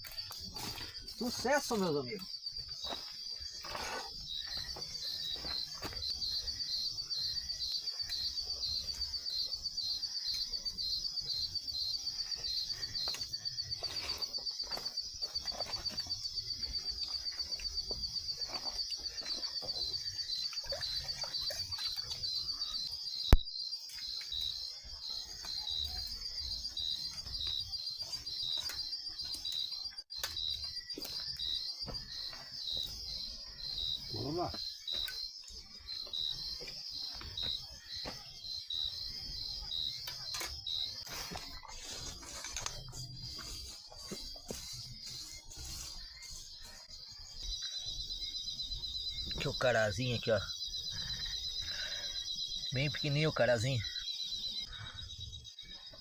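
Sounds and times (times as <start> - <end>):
insects trilling: 0.0 - 56.0
pulsing insect chirp: 0.0 - 56.0.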